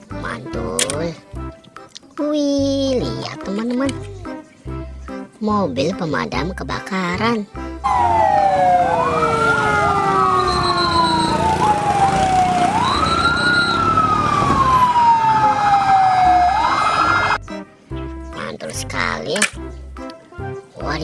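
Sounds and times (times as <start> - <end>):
fire engine siren wailing: 7.9 - 17.4.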